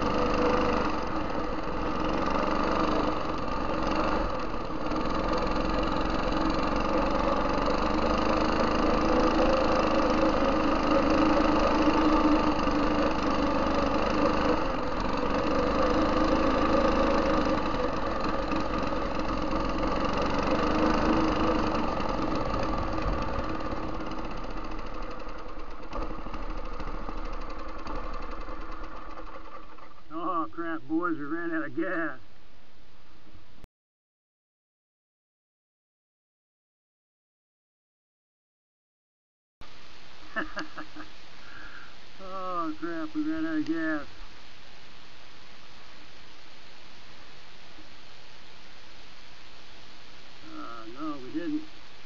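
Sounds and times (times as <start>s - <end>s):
go-kart engine running: 0.0s - 30.8s.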